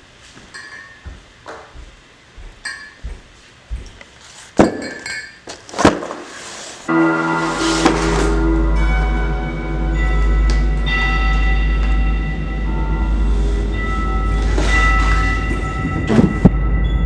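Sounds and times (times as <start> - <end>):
hard objects clinking: 4.6 - 5.6
music with deep bass: 6.9 - 17.0.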